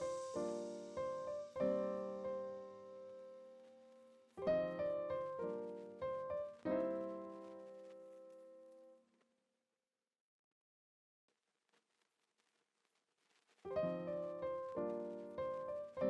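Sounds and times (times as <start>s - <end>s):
gentle piano music: 0.0s - 9.0s, 13.7s - 16.0s.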